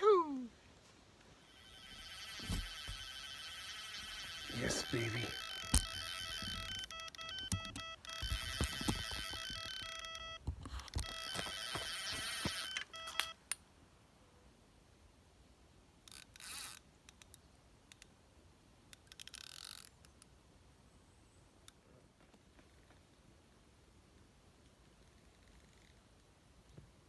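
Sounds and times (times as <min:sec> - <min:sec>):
fast electronic beeps: 0:01.5 - 0:10.4.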